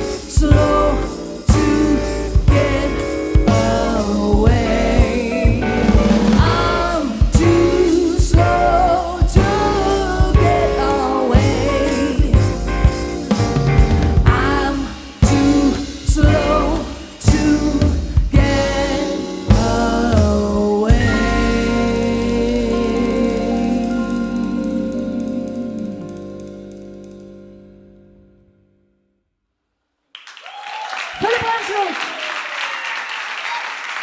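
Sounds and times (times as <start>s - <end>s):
person singing: 0.0s - 13.3s, 14.3s - 26.6s
sharp drum strokes: 0.0s - 26.5s
live jazz-pop band playing: 0.0s - 28.2s.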